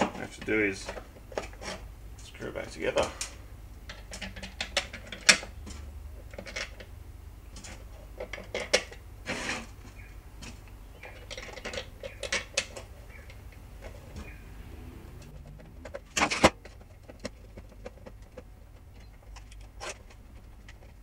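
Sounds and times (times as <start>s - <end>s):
short rasping scrape: 9.3s - 9.7s.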